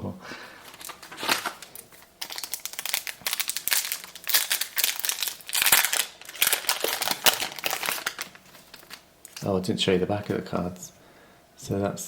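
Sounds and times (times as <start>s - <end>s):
wrapper crinkling and rustling: 0.6s - 9.6s.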